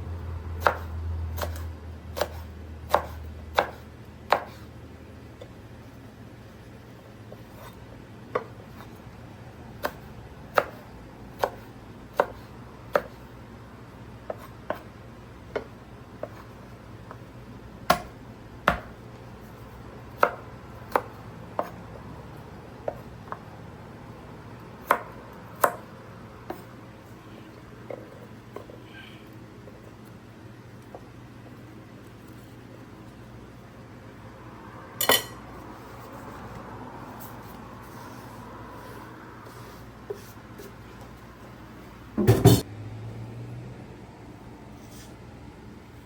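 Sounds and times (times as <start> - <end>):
knife chopping on cutting board: 0.6 - 4.7, 7.3 - 9.0, 9.8 - 13.2, 14.2 - 17.2, 17.9 - 19.0, 20.1 - 21.8, 22.8 - 23.4, 24.8 - 25.9.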